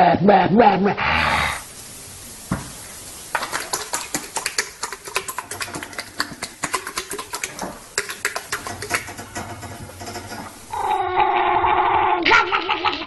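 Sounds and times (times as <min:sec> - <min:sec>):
rapid clicking and clattering: 0:03.4 - 0:10.6.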